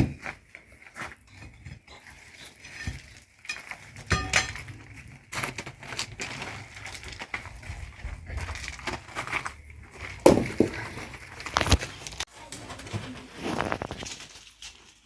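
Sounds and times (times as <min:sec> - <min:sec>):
hard objects knocking and clinking: 0:01.2 - 0:12.3.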